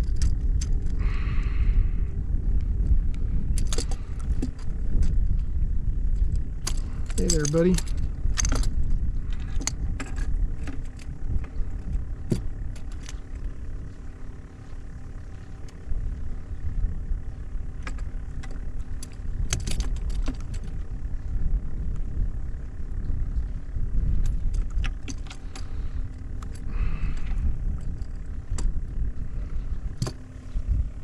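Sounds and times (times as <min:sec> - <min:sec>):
sharp clicks and light rattles: 0:00.0 - 0:01.5, 0:02.5 - 0:31.0
faint steady hum: 0:00.0 - 0:31.0
low rumble: 0:00.0 - 0:31.0.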